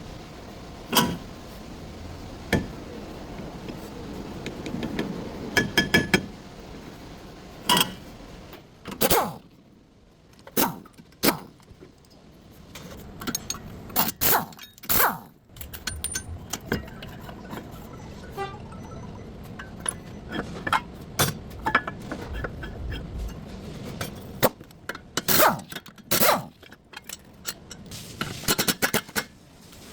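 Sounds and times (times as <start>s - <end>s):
hand tools clinking on metal: 13.2s - 17.7s, 24.4s - 29.3s.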